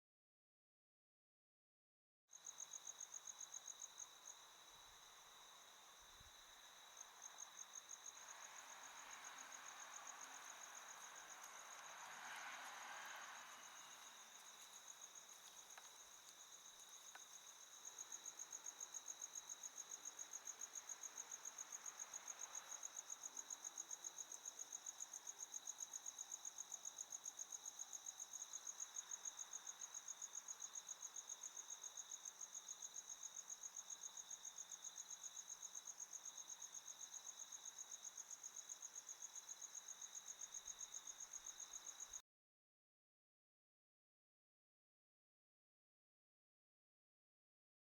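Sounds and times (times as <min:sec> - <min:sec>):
crickets chirping: 0:02.3 - 0:42.2
soft rushing noise: 0:09.2 - 0:14.5.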